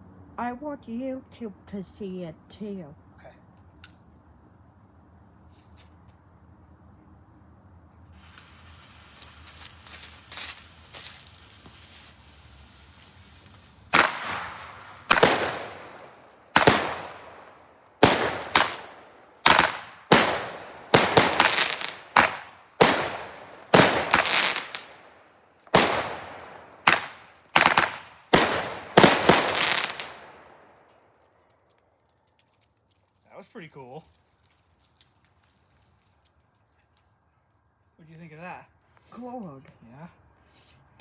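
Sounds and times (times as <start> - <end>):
fuse hissing: 8.2 - 16.6
loud firework bangs: 8.2 - 30.9.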